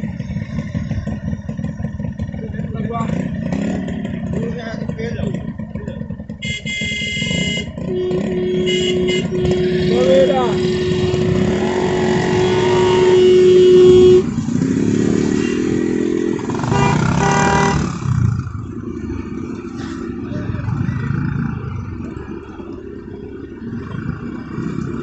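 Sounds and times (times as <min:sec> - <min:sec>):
vehicle engines running: 0:00.0 - 0:25.0
vehicle horn: 0:06.4 - 0:18.0.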